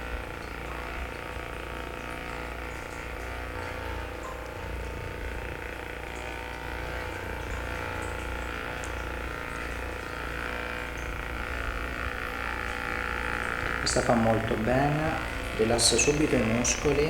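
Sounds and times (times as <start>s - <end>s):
massage gun motor buzz: 0.0s - 17.0s.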